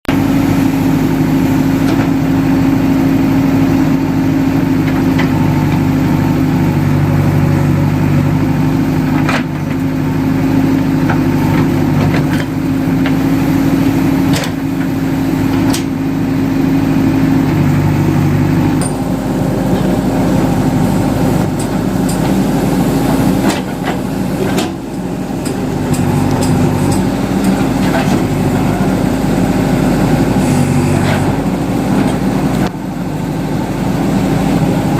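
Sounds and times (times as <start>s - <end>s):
backhoe diesel engine running: 0.0s - 34.9s
sharp clanks of digger bucket: 14.2s - 14.9s, 18.8s - 19.1s, 23.1s - 28.9s.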